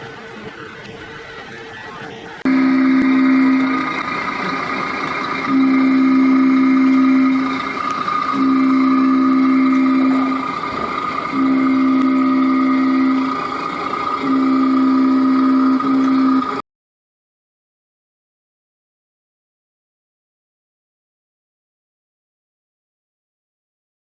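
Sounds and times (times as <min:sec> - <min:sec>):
high-pitched whine: 0:00.0 - 0:16.6
horn long blasts: 0:00.6 - 0:16.6.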